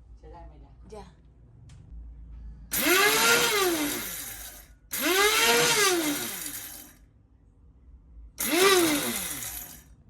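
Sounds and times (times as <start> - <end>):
spice grinder motor whine: 2.7 - 7.0, 8.4 - 9.9.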